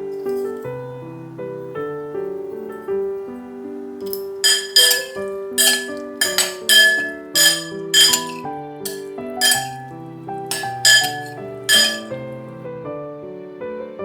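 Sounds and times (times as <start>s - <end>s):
soft piano music: 0.0s - 14.0s
glass clinks: 4.0s - 9.8s, 10.5s - 12.1s.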